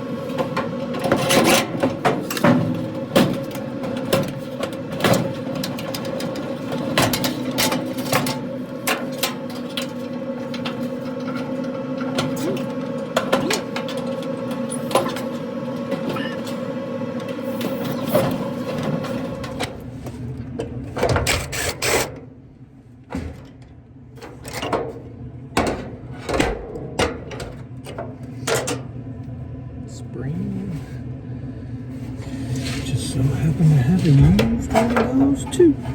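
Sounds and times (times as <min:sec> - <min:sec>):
steady hum: 0:27.9 - 0:35.9.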